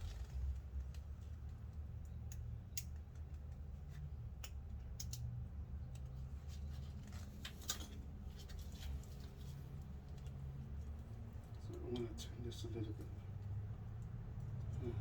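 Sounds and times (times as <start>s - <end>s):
metallic clicks of brake parts: 0.0s - 3.6s, 4.3s - 5.3s
steady low hum: 0.0s - 4.8s.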